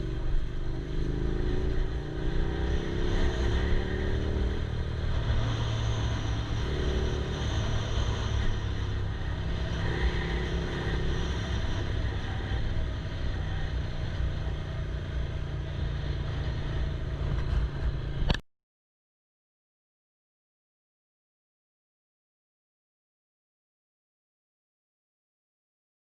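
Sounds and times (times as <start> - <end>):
motorcycle engine running: 0.0 - 18.4
wind and road noise: 0.0 - 18.4.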